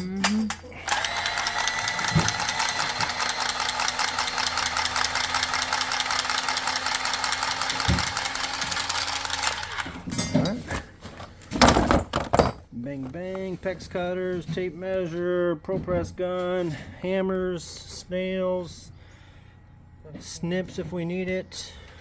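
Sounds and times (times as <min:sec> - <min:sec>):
motor pulsing: 0:00.5 - 0:10.1.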